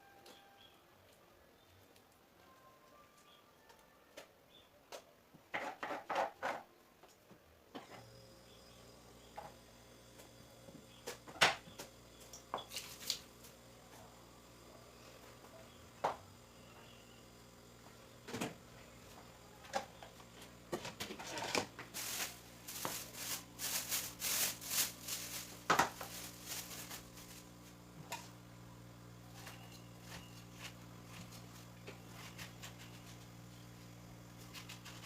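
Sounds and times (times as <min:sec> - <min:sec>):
steady low hum: 0:07.8 - 0:35.0
kitchen items knocking and clattering: 0:20.7 - 0:27.2
rustling: 0:21.2 - 0:27.8.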